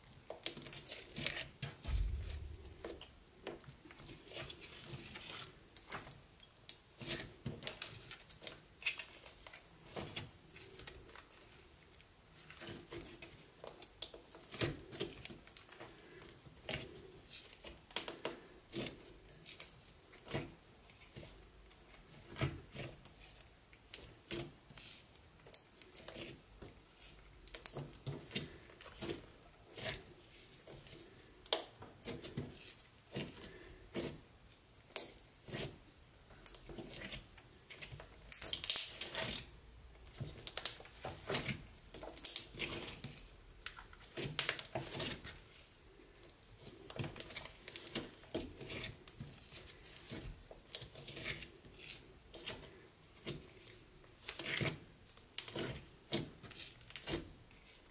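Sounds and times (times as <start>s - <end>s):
slime squelching: 0.4s - 3.1s, 36.4s - 57.9s.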